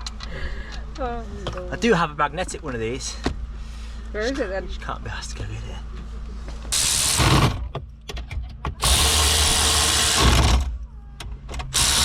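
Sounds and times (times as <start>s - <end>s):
cordless power tool running: 6.8s - 7.6s, 8.8s - 10.7s, 11.7s - 12.0s.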